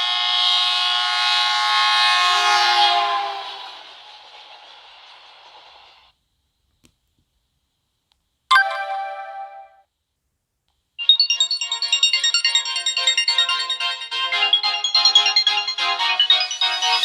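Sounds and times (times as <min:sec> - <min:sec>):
melodic phone ringtone: 0:08.5 - 0:09.8, 0:11.0 - 0:17.0
phone chime: 0:08.5 - 0:09.8.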